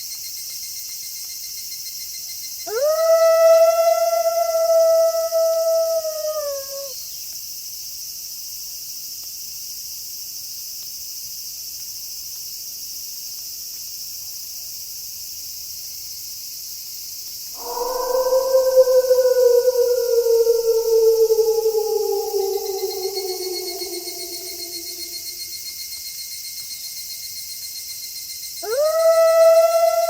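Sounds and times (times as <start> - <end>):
crickets chirring: 2.4 - 7.1, 17.6 - 25.7
wolf howling: 2.7 - 7.0, 17.6 - 25.5, 28.6 - 30.0.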